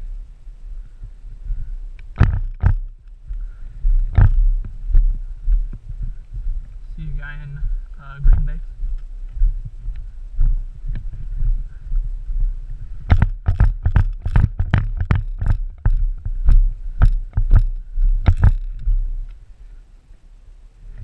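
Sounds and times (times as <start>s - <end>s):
low microphone rumble: 0.0s - 21.0s.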